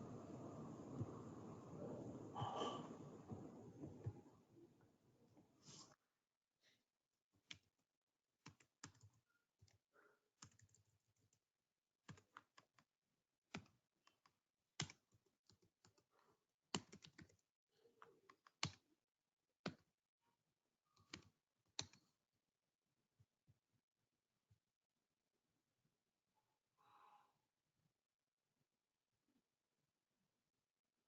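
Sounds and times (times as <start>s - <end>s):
typing on computer keyboard: 8.4s - 9.8s, 10.4s - 11.4s, 12.0s - 12.9s, 16.7s - 17.4s.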